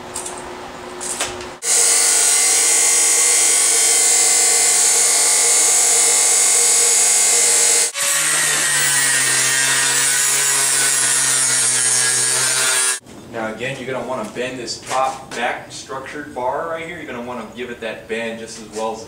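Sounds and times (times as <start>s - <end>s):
power tool cutting metal: 1.6s - 13.0s.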